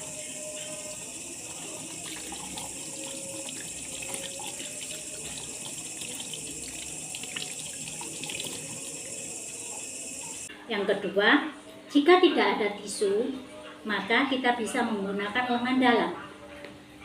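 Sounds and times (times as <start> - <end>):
tap water running into sink: 0.0 - 10.5
hands washing under water: 0.9 - 10.5.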